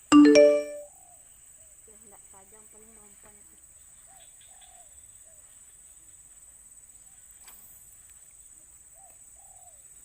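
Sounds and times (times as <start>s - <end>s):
faint dove coos: 4.1s - 5.4s, 8.9s - 10.0s.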